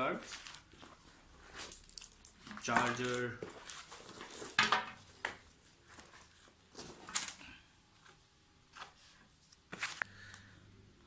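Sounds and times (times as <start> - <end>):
packaging rustling: 0.2 - 7.4.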